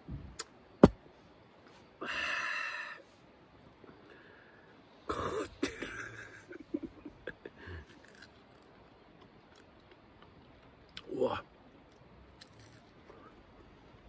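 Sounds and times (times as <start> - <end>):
man coughing: 5.1 - 6.4.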